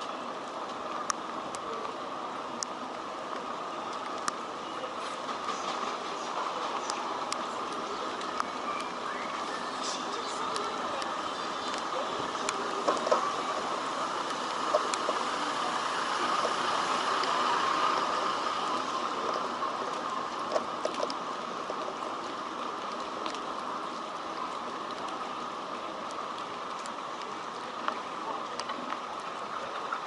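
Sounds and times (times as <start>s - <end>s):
rain hissing on street: 0.0s - 30.0s
faint drip ticks: 6.7s - 15.2s, 26.0s - 30.0s.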